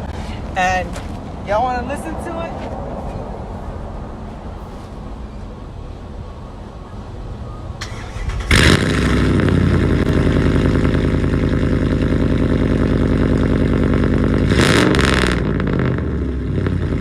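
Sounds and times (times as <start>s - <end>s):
truck engine starting and idling: 7.8s - 17.0s.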